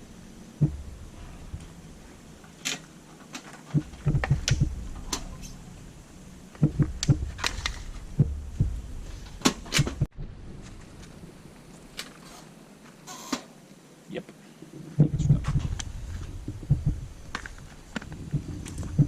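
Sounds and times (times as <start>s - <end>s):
dull thumps: 0.6s - 1.7s, 3.7s - 5.3s, 6.6s - 10.1s, 15.0s - 19.0s.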